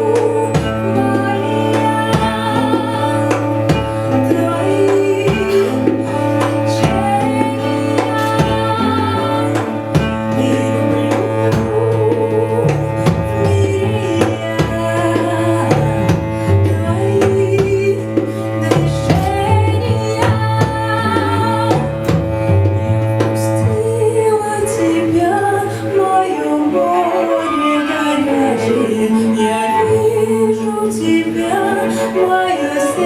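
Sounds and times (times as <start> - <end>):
hand drum strokes: 0.0 - 27.4
cellos playing: 0.0 - 33.0
woman singing: 0.0 - 33.0.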